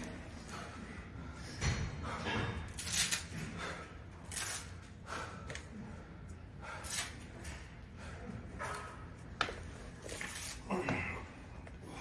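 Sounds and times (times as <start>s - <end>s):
low room hum: 0.0s - 12.0s
person breathing hard: 5.0s - 7.1s.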